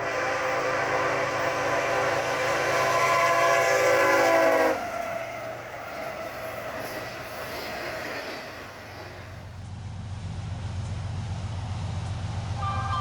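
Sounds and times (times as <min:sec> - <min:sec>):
locomotive air horn: 0:00.0 - 0:05.7, 0:12.6 - 0:13.0
low rumble of train: 0:00.0 - 0:13.0.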